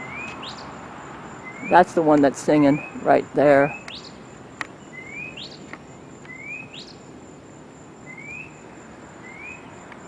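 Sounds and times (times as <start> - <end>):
songbird whistled notes: 4.9 - 5.6, 6.3 - 7.0, 8.1 - 8.6.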